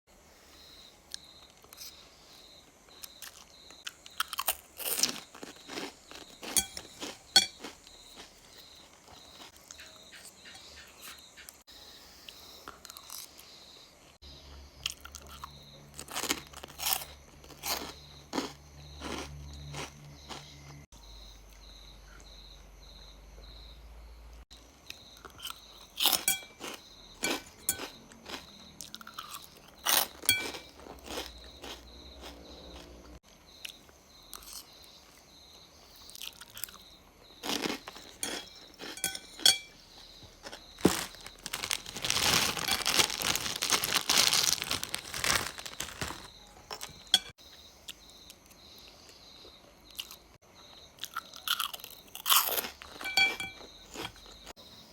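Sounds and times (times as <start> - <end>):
person chewing crunchy food: 2.9 - 10.5, 14.8 - 20.9, 24.8 - 35.2, 35.9 - 48.4, 49.8 - 54.6.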